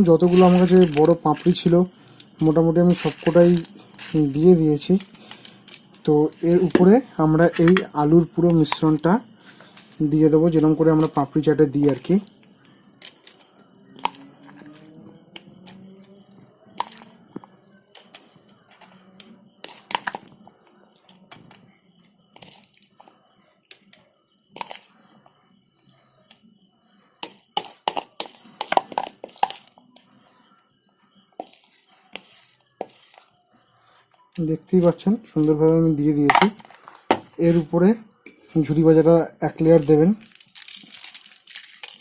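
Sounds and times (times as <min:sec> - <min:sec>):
chips crunching: 0:00.2 - 0:04.5, 0:39.7 - 0:42.0
spoon tapping and scraping a bowl: 0:27.2 - 0:29.7.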